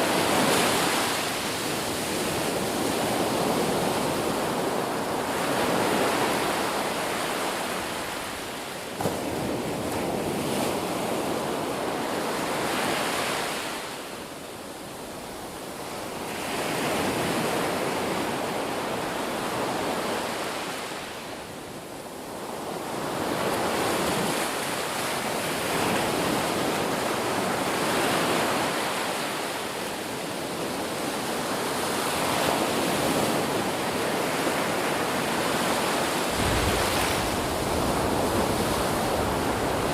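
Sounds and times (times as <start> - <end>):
ocean waves breaking: 32.8 - 39.9.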